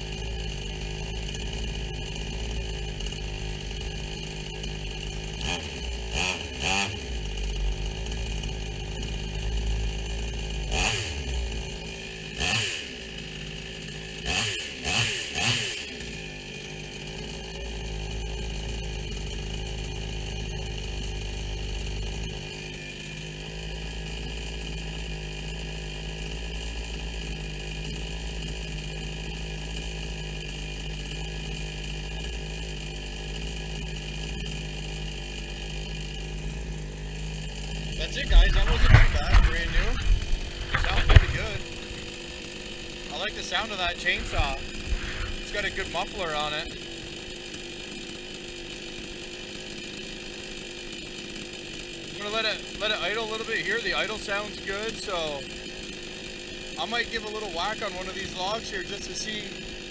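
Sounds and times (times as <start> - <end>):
chainsaw revving and idling: 0.0 - 59.9.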